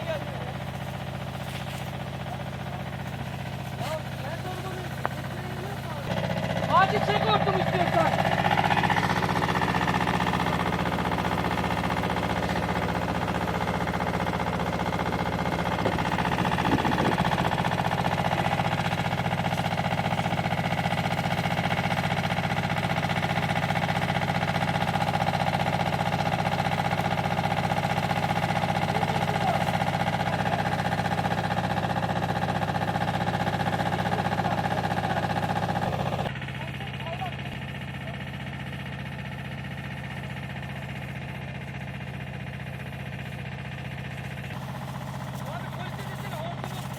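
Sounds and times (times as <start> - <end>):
engine running with whine: 0.0 - 46.9.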